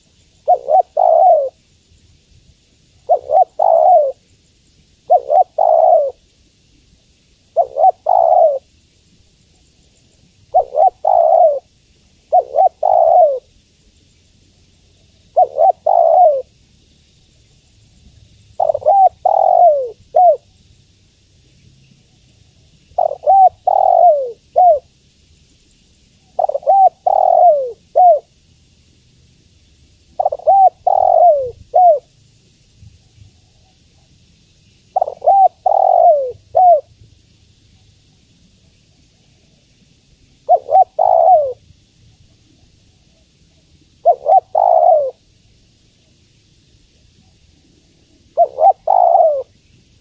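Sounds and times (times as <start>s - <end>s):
dove cooing: 0.0s - 1.6s, 3.0s - 4.2s, 5.0s - 6.3s, 7.5s - 8.7s, 10.5s - 13.5s, 15.2s - 16.6s, 18.6s - 20.5s, 23.0s - 24.9s, 26.3s - 28.4s, 30.2s - 32.1s, 35.0s - 37.0s, 40.4s - 41.7s, 44.0s - 45.3s, 48.0s - 49.6s.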